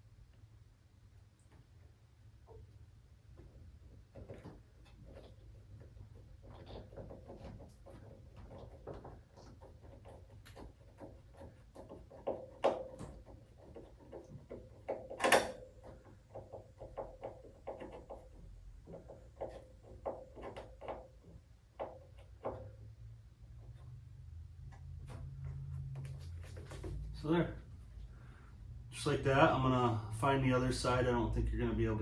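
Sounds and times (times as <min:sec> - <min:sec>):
small clicks and scrapes: 0:03.3 - 0:22.9.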